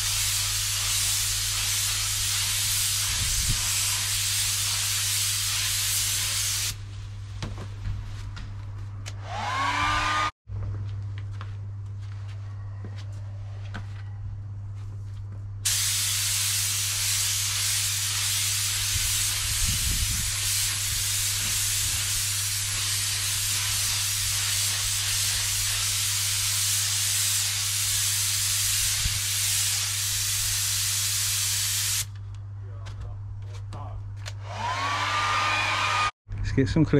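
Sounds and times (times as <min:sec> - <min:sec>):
spray gun air hissing: 0:00.0 - 0:06.8, 0:15.7 - 0:32.1.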